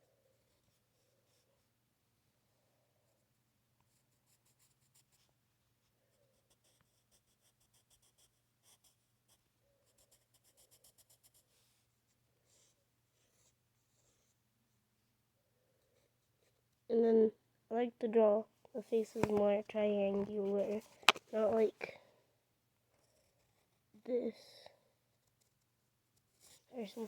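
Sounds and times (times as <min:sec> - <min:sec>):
faint scratching on paper: 0:00.3 - 0:01.8, 0:03.0 - 0:14.4, 0:25.1 - 0:27.0.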